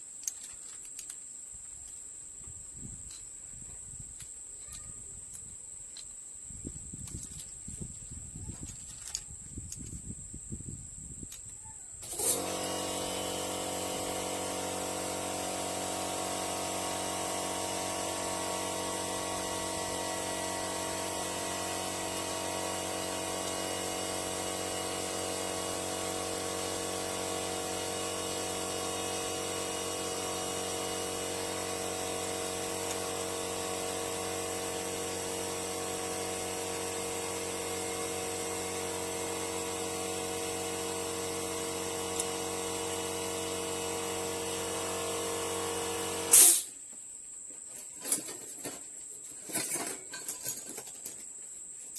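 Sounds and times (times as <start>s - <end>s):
small electric motor whining: 12.0s - 46.7s.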